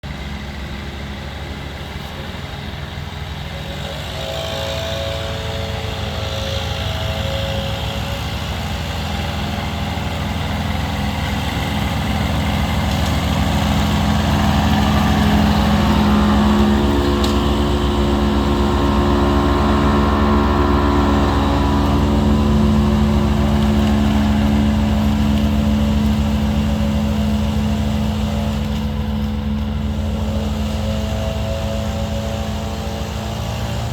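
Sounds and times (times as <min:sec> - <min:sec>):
ride-on mower engine: 0:00.0 - 0:33.9
high-pitched whine: 0:15.7 - 0:25.0.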